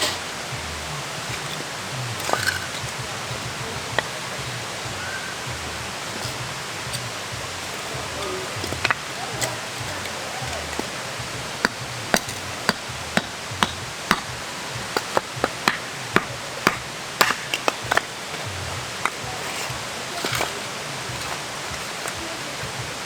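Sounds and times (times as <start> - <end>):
rustle: 0.0 - 23.0
steady hiss: 0.0 - 23.0
sharp knocks and taps: 6.0 - 20.5.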